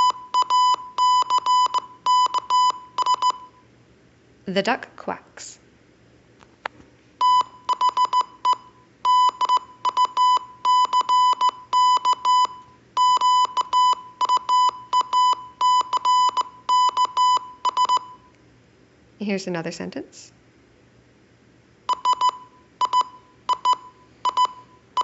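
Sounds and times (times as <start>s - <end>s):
morse code beeps: 0.0s - 3.6s, 7.2s - 18.3s, 21.9s - 25.0s.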